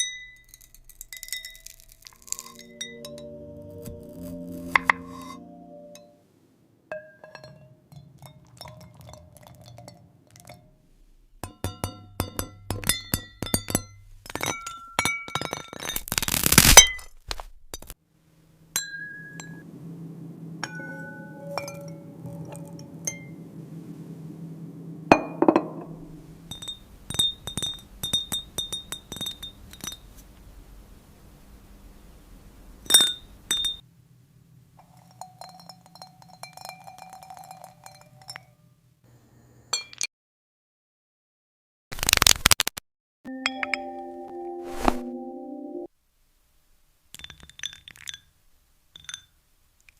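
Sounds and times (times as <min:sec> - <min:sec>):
glass clinking and tapping: 0:06.9 - 0:10.6, 0:11.4 - 0:16.0, 0:25.1 - 0:30.0, 0:32.9 - 0:33.8, 0:34.8 - 0:38.6, 0:39.8 - 0:40.1, 0:43.3 - 0:44.0, 0:47.2 - 0:48.3, 0:49.0 - 0:49.4
loud crunch: 0:15.9 - 0:17.9, 0:41.9 - 0:42.8.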